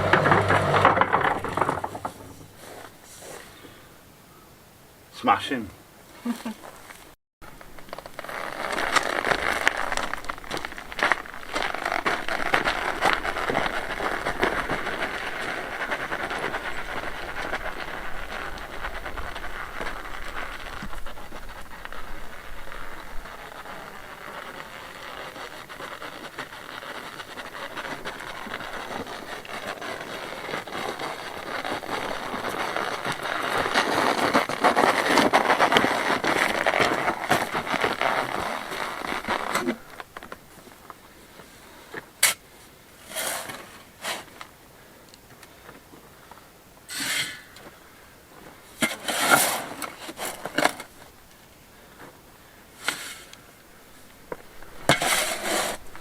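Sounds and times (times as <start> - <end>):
shovel scraping gritty sand: 0.0 - 3.6, 7.9 - 40.0, 42.2 - 44.4, 46.9 - 47.7, 48.6 - 51.2, 52.8 - 56.0.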